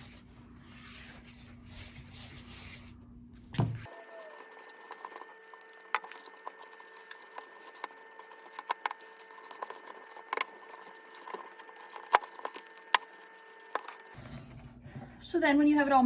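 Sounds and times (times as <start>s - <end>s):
spoon stirring thick batter: 3.8s - 14.7s.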